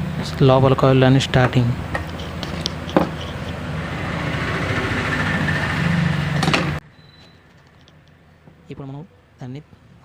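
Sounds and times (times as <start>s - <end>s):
engine humming: 0.0s - 6.8s.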